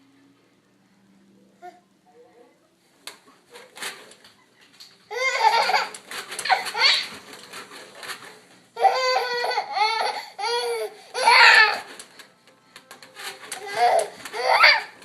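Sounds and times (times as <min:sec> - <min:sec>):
baby giggling: 0:05.1 - 0:07.1, 0:08.8 - 0:11.6.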